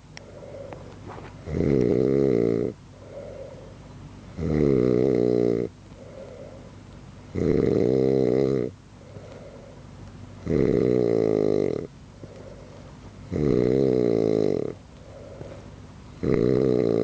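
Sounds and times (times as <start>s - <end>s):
soft breathing: 0.2s - 1.5s, 2.9s - 4.4s, 5.9s - 6.9s, 8.9s - 10.1s, 12.1s - 13.3s, 14.6s - 16.5s
man snoring heavily: 1.4s - 3.7s, 4.4s - 6.7s, 7.3s - 9.8s, 10.4s - 17.0s.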